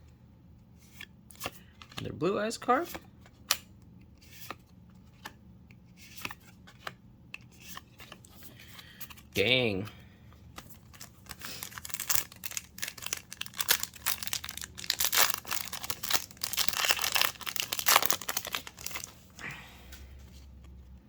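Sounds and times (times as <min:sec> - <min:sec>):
foil wrapper crinkling and tearing: 0:10.7 - 0:19.2.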